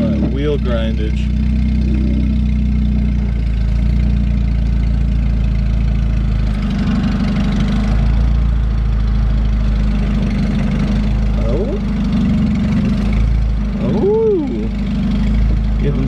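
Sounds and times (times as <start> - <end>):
car engine running loudly: 0.0 - 16.0.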